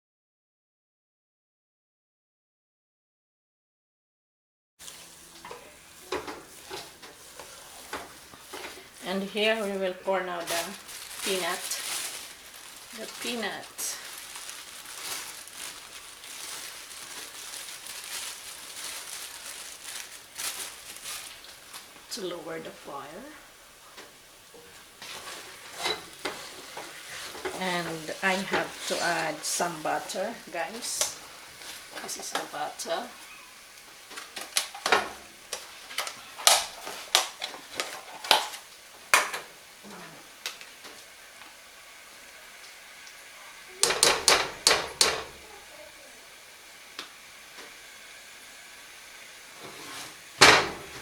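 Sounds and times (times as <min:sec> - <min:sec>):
batter sizzling in a pan: 0:04.8 - 0:51.0
scraping in a pan: 0:24.6 - 0:32.5, 0:49.6 - 0:51.0.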